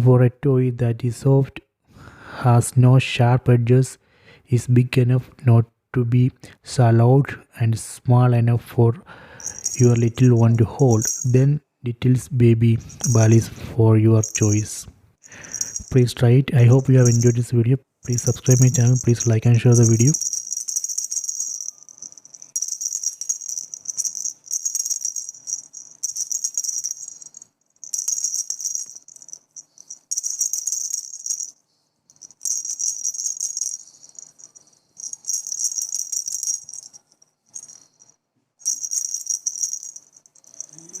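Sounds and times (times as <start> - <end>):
rattle in plush ball shaken: 9.4 - 11.4, 12.8 - 13.5, 14.2 - 17.5, 18.1 - 41.0.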